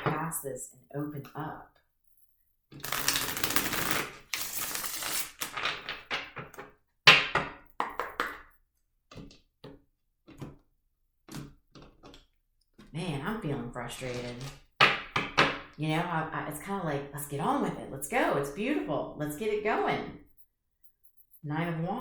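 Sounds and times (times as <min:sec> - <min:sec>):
cards riffle shuffling: 0:02.8 - 0:05.6, 0:14.0 - 0:14.6.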